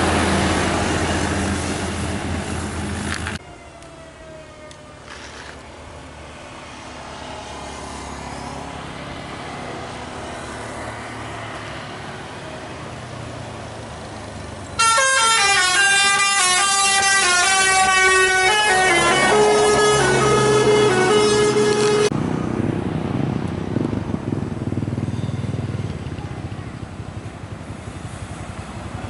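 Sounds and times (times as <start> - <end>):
bus engine and tyre noise: 0.0 - 29.0
multi-tone bus horn: 14.8 - 22.2.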